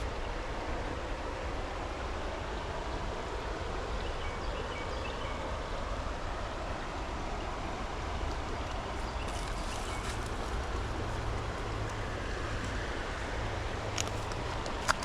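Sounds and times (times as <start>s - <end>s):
stream water rushing: 4.6s - 15.0s.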